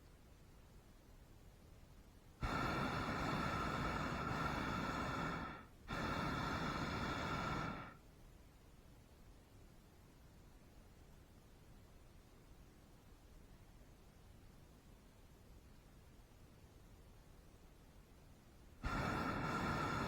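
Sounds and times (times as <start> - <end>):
propane burner blasts: 2.4 - 8.0, 18.8 - 20.0.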